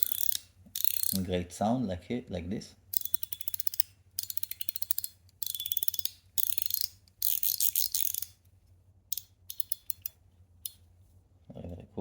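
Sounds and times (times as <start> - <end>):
fidget slider clicking: 3.0 - 8.4.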